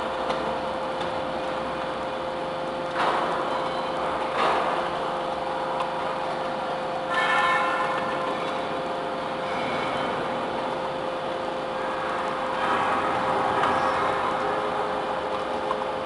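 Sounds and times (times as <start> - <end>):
metallic ringing and screeching: 9.3 - 10.4.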